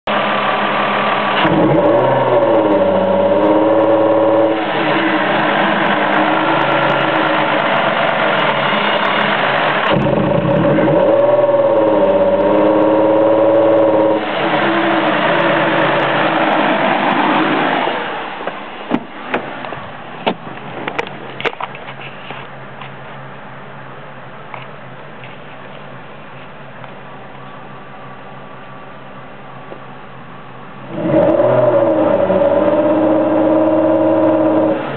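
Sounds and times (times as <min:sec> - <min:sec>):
car engine revving: 0:00.1 - 0:19.7, 0:30.8 - 0:34.9.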